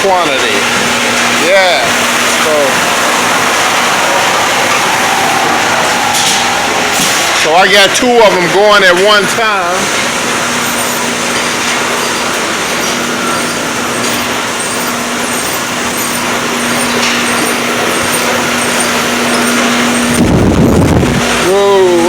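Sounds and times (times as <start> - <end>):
machine humming and hissing: 0.0 - 22.0.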